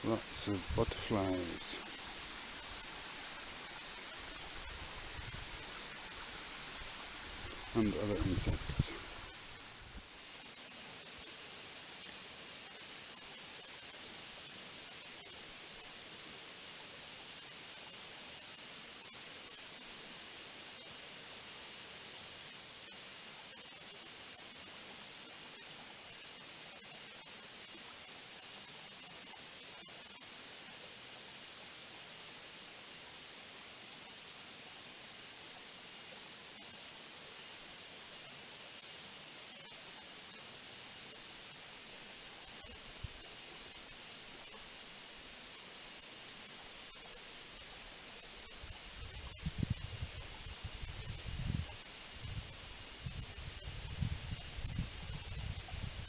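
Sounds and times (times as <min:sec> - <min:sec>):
water running over rocks: 0:00.0 - 0:10.1
insects buzzing: 0:00.0 - 0:10.6, 0:38.2 - 0:56.0
faint high whine: 0:00.0 - 0:17.0, 0:23.0 - 0:56.0.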